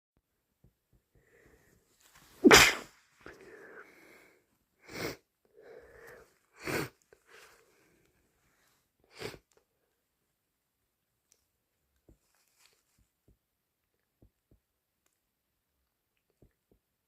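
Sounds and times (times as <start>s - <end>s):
person sneezing: 2.4s - 3.0s
breathy in-breaths: 3.2s - 8.2s.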